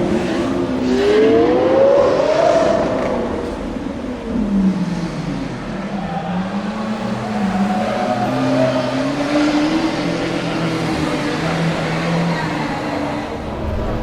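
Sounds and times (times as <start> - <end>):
car engine accelerating: 6.4 - 14.0.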